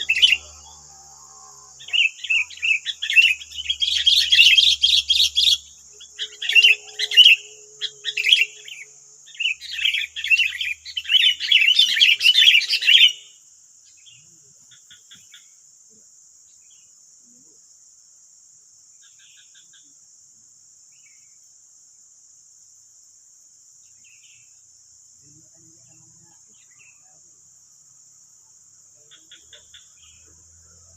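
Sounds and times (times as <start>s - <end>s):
birds chirping: 0.0s - 15.6s
high insect drone: 0.0s - 30.9s.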